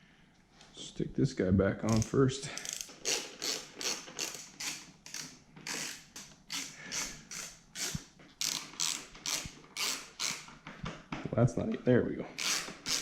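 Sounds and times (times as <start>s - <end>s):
ratchet wrench clicking: 1.9s - 10.5s, 12.4s - 13.0s.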